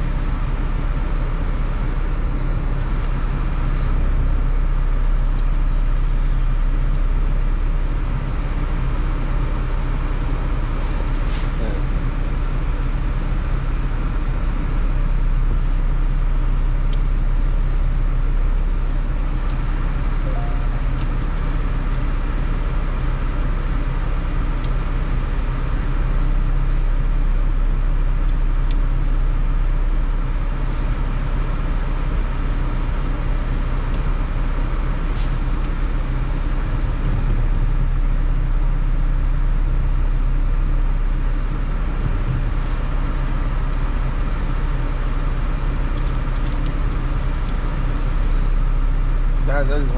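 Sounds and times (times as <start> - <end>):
low vehicle hum: 0.0 - 49.9.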